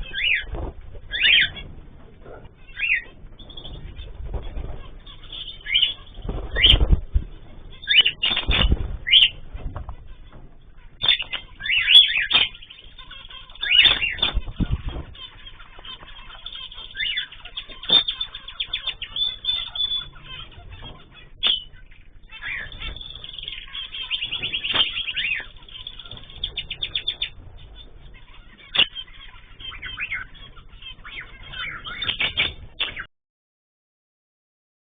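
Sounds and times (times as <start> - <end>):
birds chirping and trilling: 0.0 - 33.1.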